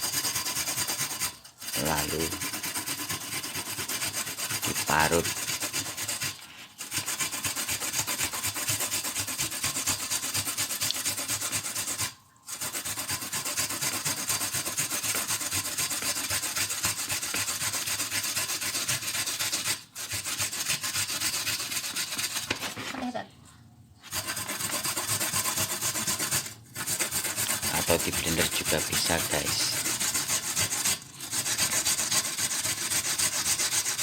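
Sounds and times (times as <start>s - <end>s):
ginger rasping on hand grater: 0.0s - 22.8s, 24.0s - 34.0s.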